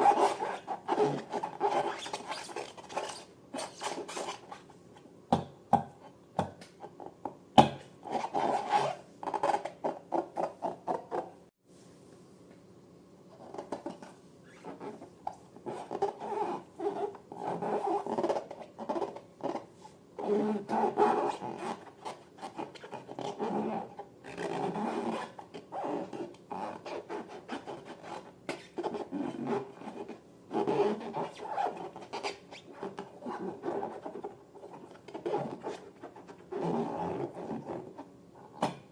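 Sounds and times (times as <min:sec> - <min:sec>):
hands rubbing balloons: 0:00.0 - 0:04.7, 0:13.4 - 0:38.7.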